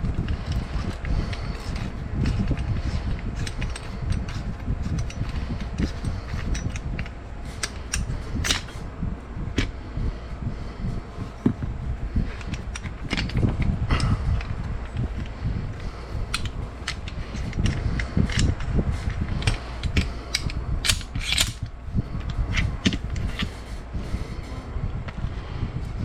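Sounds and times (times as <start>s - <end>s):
metallic clicks and clacks: 0.0s - 8.8s, 11.4s - 23.6s
low handling rumble: 0.0s - 26.0s.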